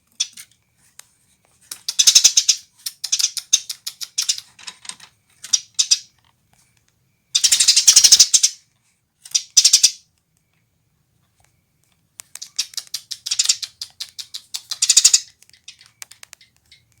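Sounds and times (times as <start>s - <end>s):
sparrow chirping: 1.8s - 4.5s, 5.4s - 6.1s, 7.3s - 8.6s, 9.3s - 10.0s, 12.4s - 16.0s.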